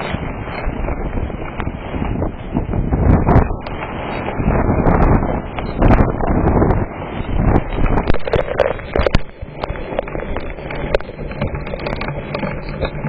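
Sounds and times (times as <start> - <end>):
wind buffeting microphone: 0.0 - 13.0
hailstones striking hard surfaces: 7.8 - 13.0.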